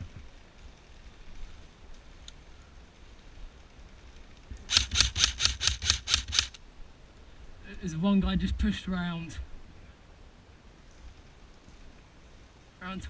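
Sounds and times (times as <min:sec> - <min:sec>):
airsoft gun rapid fire: 0:04.7 - 0:06.6.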